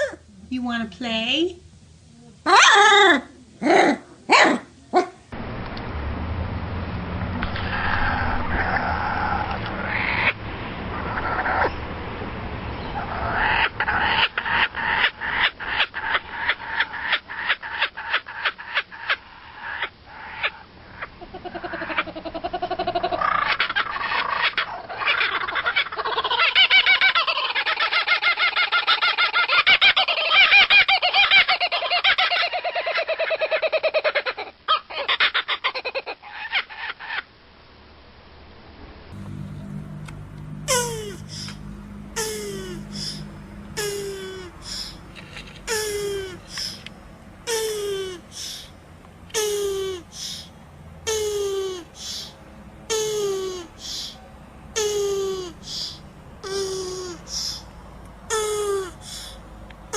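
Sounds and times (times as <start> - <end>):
animal repeated short calls: 40.7 - 41.6, 42.2 - 46.8, 47.5 - 48.7, 49.3 - 50.5, 51.1 - 54.2, 54.8 - 57.7.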